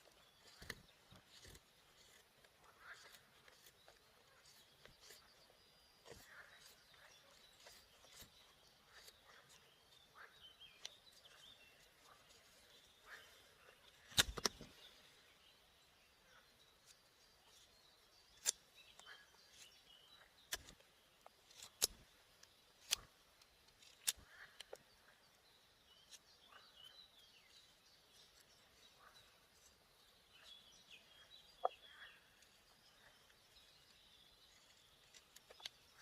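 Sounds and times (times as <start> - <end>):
faint birdsong: 0.0 - 36.0
knife cracking into wood: 0.4 - 3.8, 13.9 - 14.8, 18.3 - 19.2, 20.4 - 24.8.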